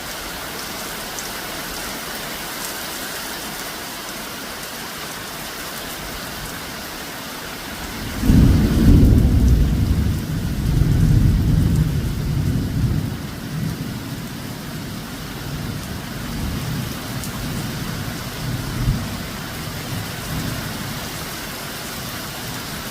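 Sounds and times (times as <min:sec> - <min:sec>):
heavy rain hissing: 0:00.0 - 0:22.9
thunder rumbling: 0:07.9 - 0:14.0.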